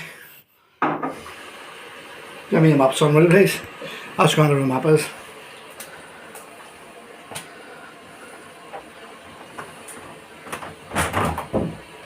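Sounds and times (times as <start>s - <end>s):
steady hiss: 1.0s - 12.0s
washing machine running: 1.0s - 12.0s
knocks and clatter: 10.5s - 11.9s.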